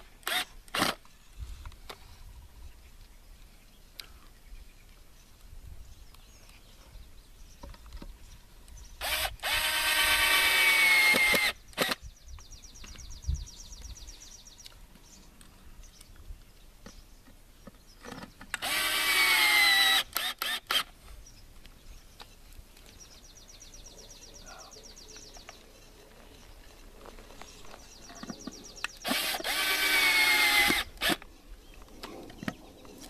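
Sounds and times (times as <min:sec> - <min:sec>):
power drill driving screws: 0:00.0 - 0:01.0, 0:09.0 - 0:12.0, 0:18.5 - 0:21.0, 0:29.0 - 0:31.3.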